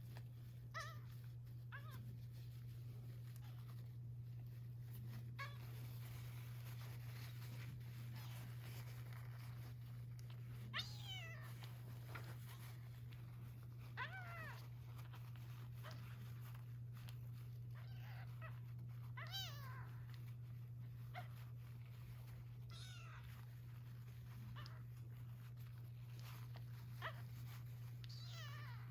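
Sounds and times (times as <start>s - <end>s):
kitten meowing: 10.7s - 11.7s, 13.9s - 15.2s, 17.7s - 20.3s, 22.6s - 23.5s, 27.0s - 28.9s.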